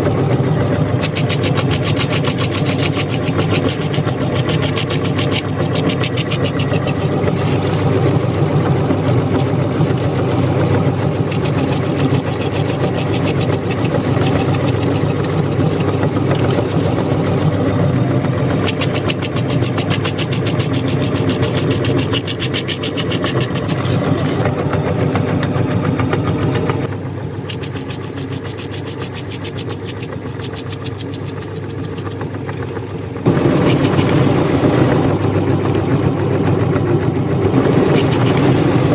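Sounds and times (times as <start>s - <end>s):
meat grinder motor drone: 0.0s - 38.9s
cookie crackling and crunching: 1.0s - 17.6s, 18.6s - 24.4s, 26.9s - 34.2s.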